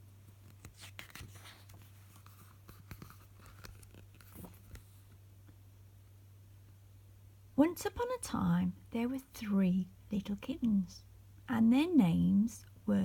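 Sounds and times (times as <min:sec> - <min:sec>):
paper rustling and clicking: 0:00.4 - 0:05.2.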